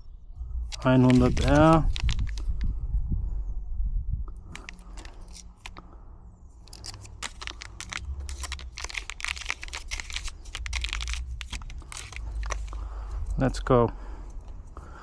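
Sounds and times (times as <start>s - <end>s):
lock pick clicking and scraping: 4.5s - 5.8s, 6.6s - 13.4s, 14.3s - 14.8s.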